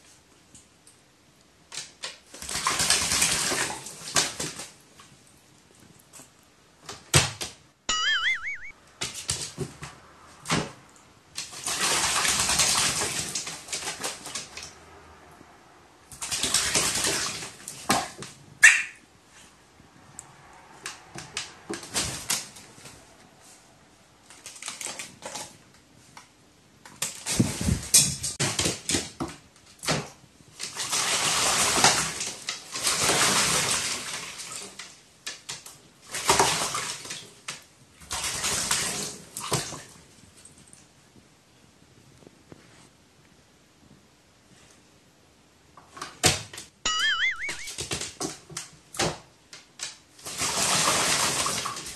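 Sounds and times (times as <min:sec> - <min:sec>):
bird splashing water with wings: 0:11.4 - 0:14.8.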